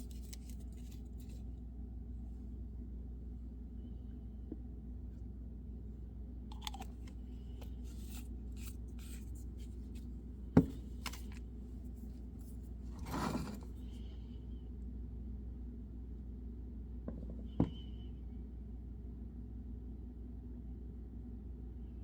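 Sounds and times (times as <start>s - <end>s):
steady low hum: 0.0s - 22.0s
knife scraping wood: 12.4s - 13.8s.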